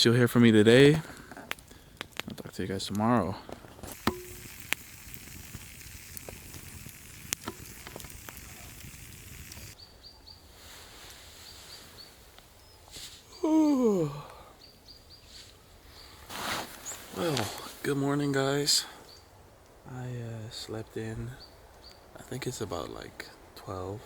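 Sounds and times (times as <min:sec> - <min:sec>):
campfire crackling: 0:00.1 - 0:09.8, 0:16.2 - 0:24.0
fire pops: 0:00.9 - 0:09.8
bird chirps: 0:09.5 - 0:10.5.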